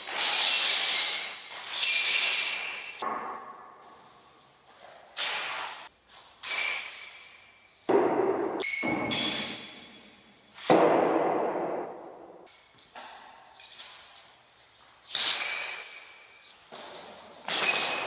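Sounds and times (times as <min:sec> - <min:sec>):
objects knocking and clinking: 0:08.6 - 0:10.1.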